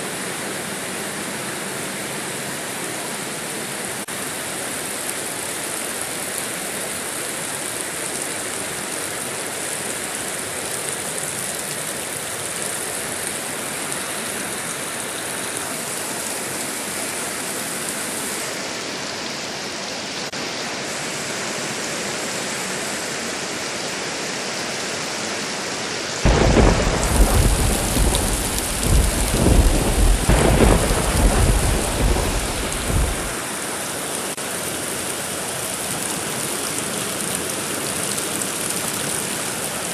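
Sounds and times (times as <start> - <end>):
steady rain: 0.0 - 39.9
thunder clap and rumble: 26.2 - 33.4.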